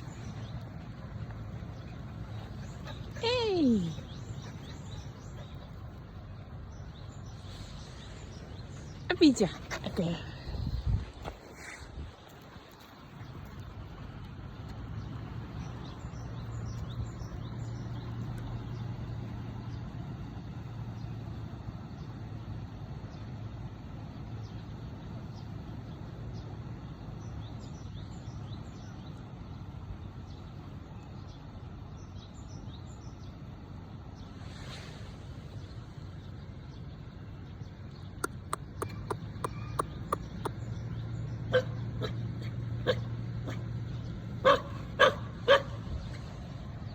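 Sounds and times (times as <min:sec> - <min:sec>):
steady low rumble: 0:00.0 - 0:19.8.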